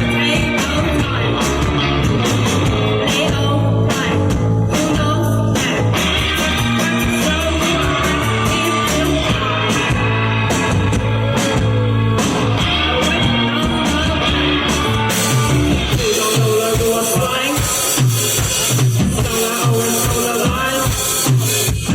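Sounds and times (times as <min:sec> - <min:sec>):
electric guitar lines: 0:00.0 - 0:21.7
bass guitar: 0:00.0 - 0:21.9
drum kit cymbals: 0:05.6 - 0:21.9.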